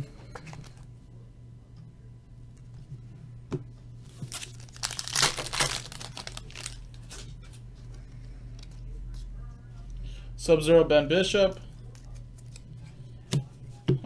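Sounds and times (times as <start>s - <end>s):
wrapper tearing and crinkling: 4.2s - 7.2s.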